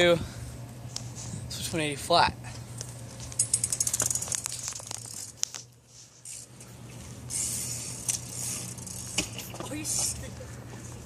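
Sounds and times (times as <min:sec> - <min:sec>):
bicycle freewheel ticking: 0:03.4 - 0:05.3, 0:07.3 - 0:10.3.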